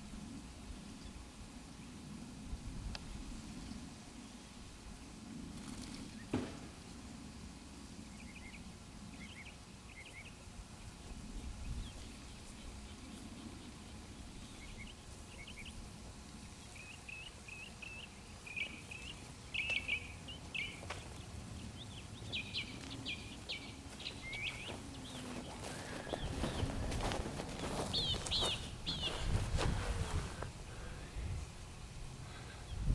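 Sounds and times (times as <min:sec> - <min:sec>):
small birds chirping: 0:08.1 - 0:31.2.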